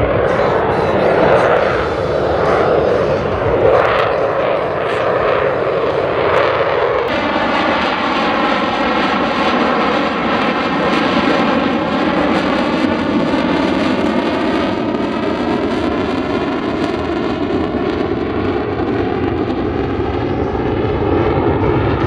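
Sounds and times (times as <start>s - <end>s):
jet engine roaring: 0.0s - 22.0s.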